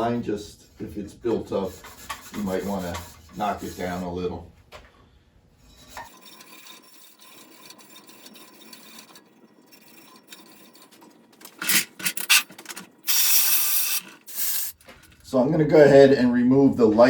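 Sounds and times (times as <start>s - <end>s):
scouring pad scrubbing metal: 1.3s - 4.1s, 6.0s - 14.8s.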